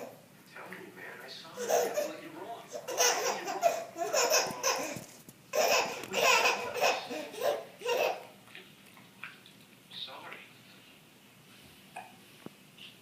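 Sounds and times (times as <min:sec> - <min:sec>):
young child laughing: 0:01.6 - 0:08.3.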